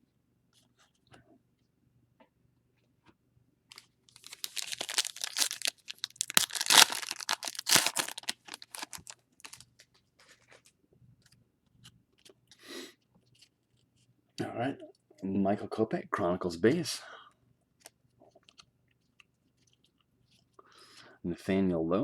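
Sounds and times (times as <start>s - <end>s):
foil wrapper tearing and crinkling: 4.2s - 9.7s.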